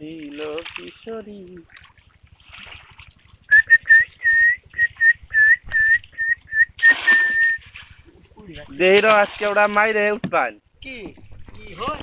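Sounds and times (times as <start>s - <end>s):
person whistling a tune: 3.5s - 7.6s.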